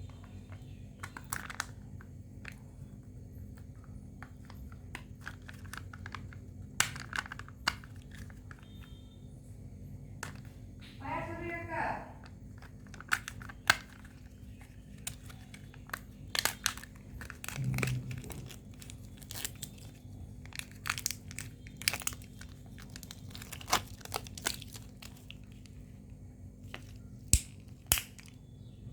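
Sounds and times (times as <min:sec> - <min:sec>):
wrappers crinkling and tearing: 0:04.2 - 0:08.8, 0:12.3 - 0:25.8.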